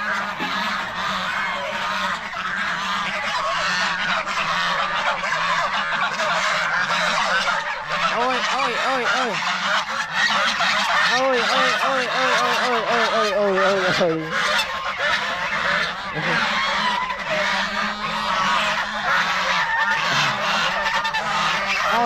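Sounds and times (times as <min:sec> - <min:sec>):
geese honking: 0:00.0 - 0:22.0.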